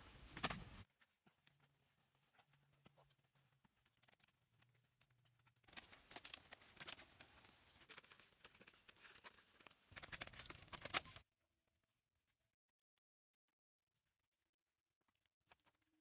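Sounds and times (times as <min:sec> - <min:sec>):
faint clicks and scrapes: 0:00.0 - 0:11.2.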